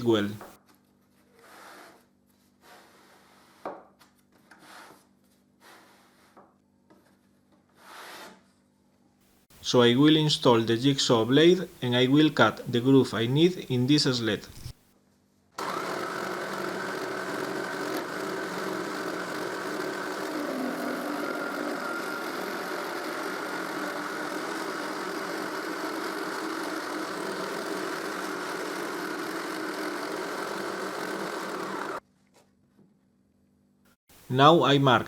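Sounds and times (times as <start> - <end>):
jigsaw cutting: 15.6 - 32.0.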